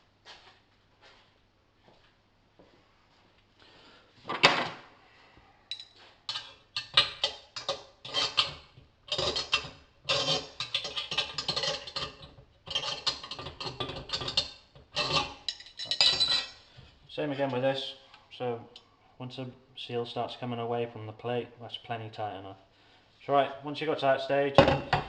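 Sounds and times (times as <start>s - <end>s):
spanner clicking and scraping: 6.3s - 16.4s.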